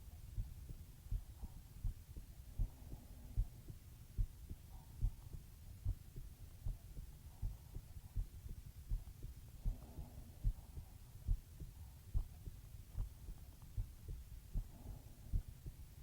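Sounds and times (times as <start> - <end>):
human heartbeat: 0.0 - 16.0.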